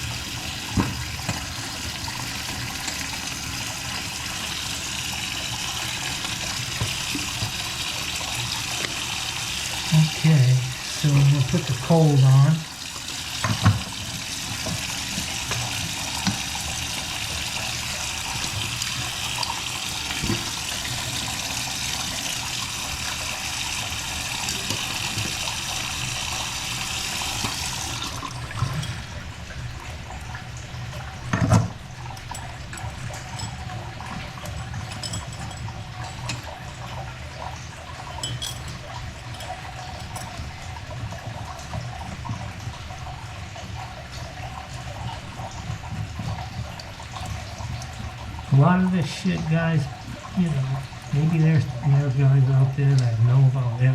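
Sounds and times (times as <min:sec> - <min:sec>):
water running from faucet: 0:00.0 - 0:53.9.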